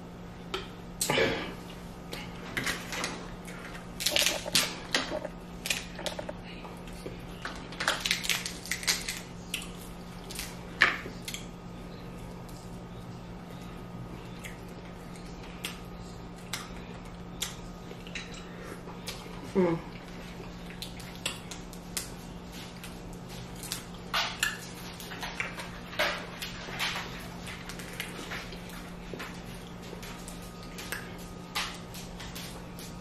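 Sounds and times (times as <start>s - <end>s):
crab shells cracking: 3.9s - 6.3s, 7.4s - 10.6s.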